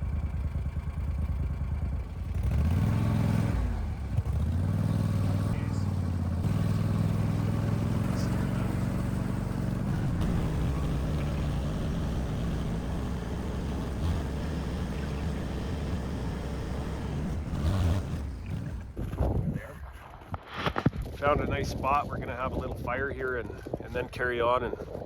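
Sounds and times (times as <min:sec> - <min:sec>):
vehicle engine running: 0:00.0 - 0:19.3.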